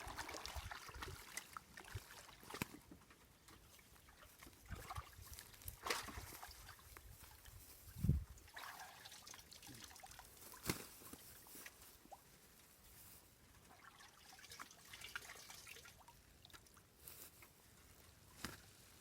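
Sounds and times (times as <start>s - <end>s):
water dripping and trickling: 0.0s - 10.7s, 13.6s - 16.9s.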